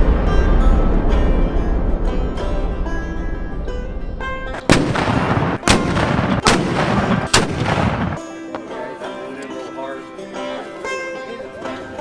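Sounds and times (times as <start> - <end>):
music: 0.0 - 12.0
gun blasts with echo: 4.6 - 8.3.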